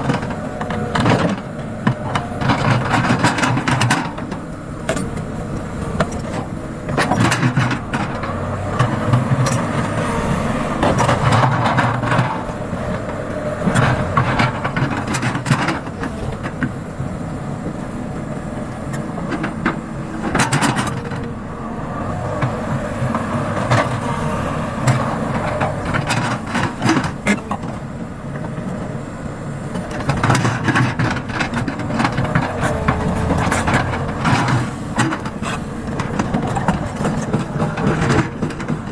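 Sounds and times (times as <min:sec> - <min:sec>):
excavator diesel engine running: 0:00.0 - 0:38.9
knocks and clanks: 0:24.8 - 0:27.8, 0:29.7 - 0:38.9.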